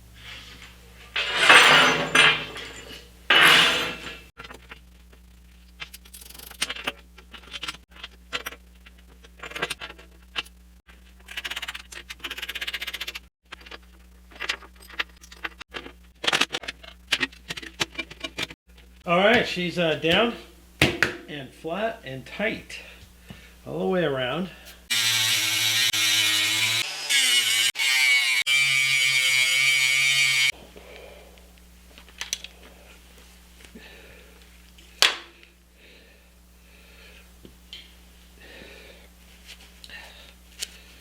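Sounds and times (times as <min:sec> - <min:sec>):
metal scraping: 0:00.3 - 0:04.3
metal tools clinking and knocking: 0:01.2 - 0:04.2.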